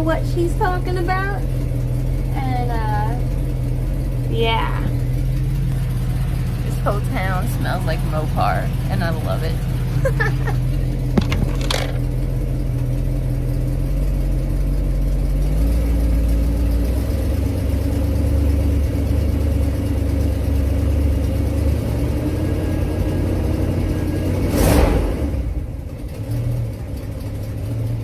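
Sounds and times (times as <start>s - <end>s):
car engine running: 0.0s - 28.0s.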